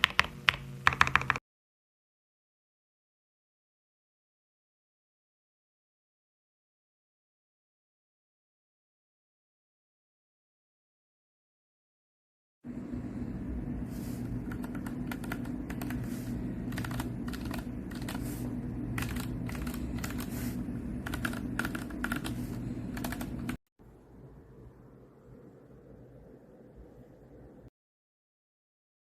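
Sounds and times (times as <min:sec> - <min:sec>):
mechanical keyboard typing: 0:00.0 - 0:01.4, 0:14.4 - 0:23.6
low steady hum: 0:12.7 - 0:27.7.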